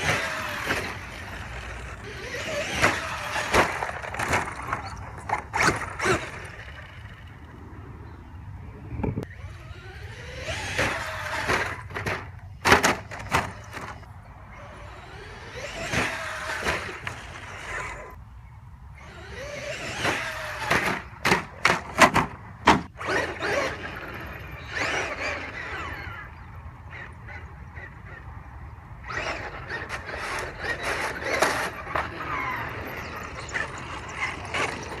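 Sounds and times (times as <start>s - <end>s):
tyre noise on ground: 0.0s - 6.8s
rc truck motor whine: 0.0s - 35.0s.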